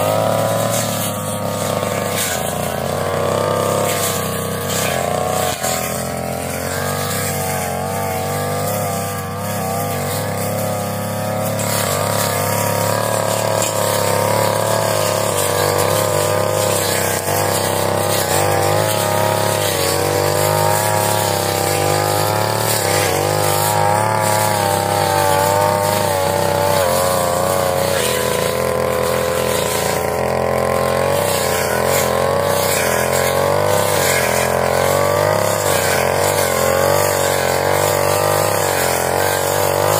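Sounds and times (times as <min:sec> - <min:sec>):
brush cutter engine cutting grass: 0:00.0 - 0:39.9.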